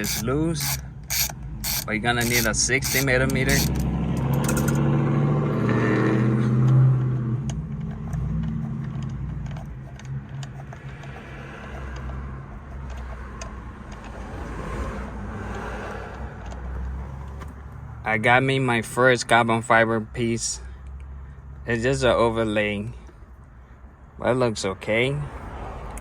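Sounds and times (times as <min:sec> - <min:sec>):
vehicle driving by: 0:02.0 - 0:18.2.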